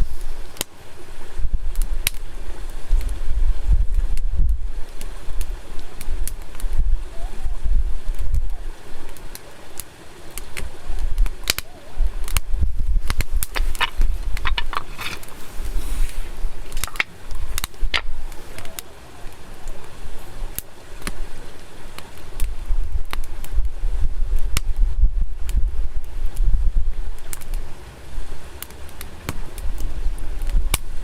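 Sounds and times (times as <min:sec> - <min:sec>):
wood fire crackling and popping: 0:00.0 - 0:00.8, 0:01.7 - 0:03.2, 0:04.2 - 0:06.8, 0:08.1 - 0:23.6, 0:27.1 - 0:27.7, 0:28.6 - 0:31.0
wind rumble on microphone: 0:00.0 - 0:09.4, 0:10.4 - 0:31.0.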